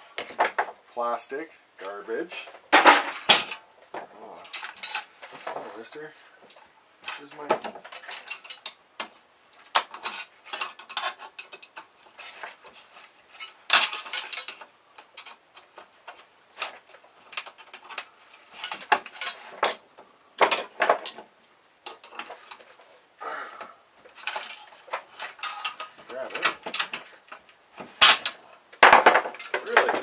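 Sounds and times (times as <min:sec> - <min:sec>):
small metal and plastic parts clinking: 0:04.4 - 0:05.6, 0:06.5 - 0:19.8, 0:24.0 - 0:30.0.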